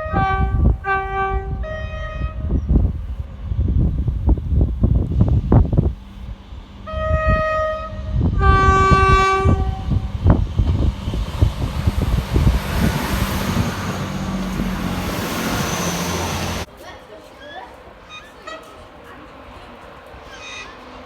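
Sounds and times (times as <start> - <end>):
train two-tone horn: 0.0 - 2.6, 6.8 - 10.2
train rumble: 0.0 - 21.0.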